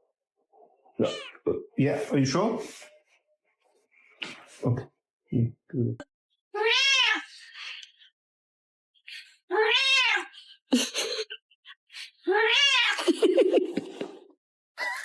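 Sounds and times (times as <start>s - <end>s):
cat meowing: 1.0s - 1.6s, 6.6s - 7.3s, 9.6s - 10.3s.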